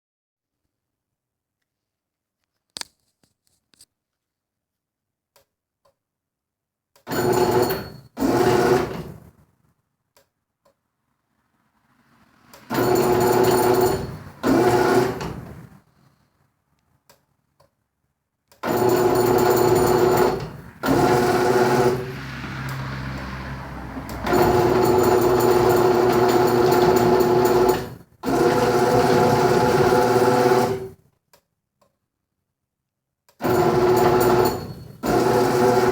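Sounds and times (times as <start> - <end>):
garage door opener motor humming: 7.1 - 9.2, 12.6 - 15.7, 18.6 - 31.0, 33.4 - 35.9.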